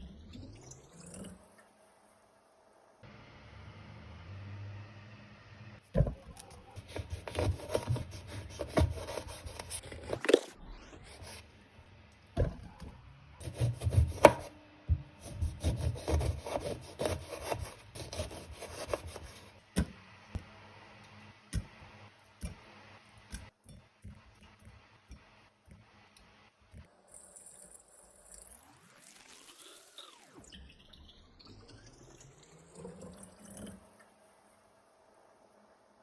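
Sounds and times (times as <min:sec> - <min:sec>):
knife cutting fruit on wooden board: 0:06.0 - 0:11.4, 0:12.4 - 0:20.0.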